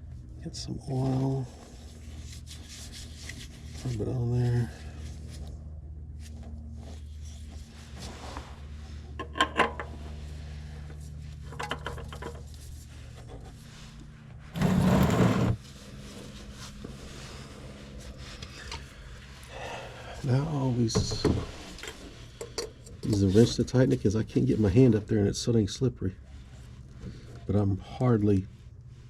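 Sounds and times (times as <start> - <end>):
rough scraping rustle: 14.6 - 15.6.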